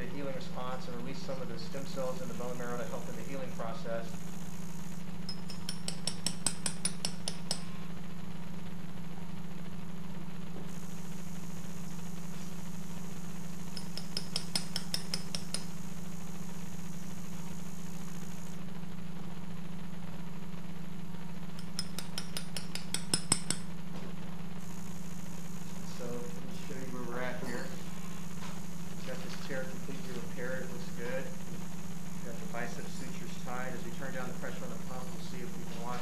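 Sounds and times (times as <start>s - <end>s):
steady low hum: 0.0s - 36.0s
mallet tapping metal awl: 5.3s - 7.7s, 13.7s - 15.7s, 21.6s - 23.7s.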